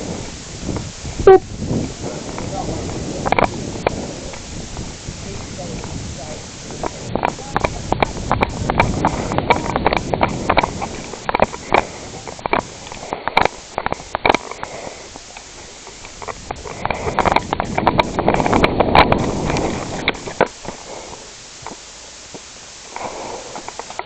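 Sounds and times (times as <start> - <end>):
low rumbling noise: 0.0 - 24.0
sharp clicks and knocks: 6.8 - 20.8.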